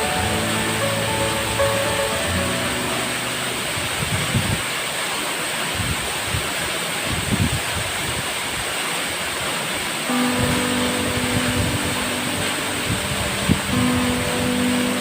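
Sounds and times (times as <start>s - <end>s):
waterfall roaring: 0.0s - 15.0s
wind buffeting microphone: 3.7s - 4.7s, 5.7s - 8.3s, 10.4s - 14.7s.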